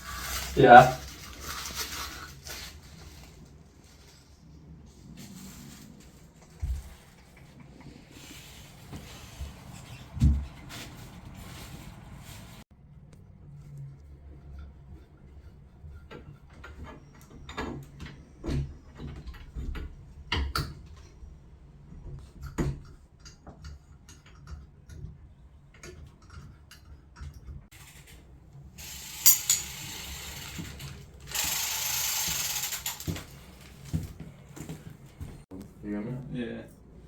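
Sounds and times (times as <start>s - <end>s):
ratchet clicks: 28.8s - 33.2s
metal tools clicking and knocking: 29.2s - 30.1s.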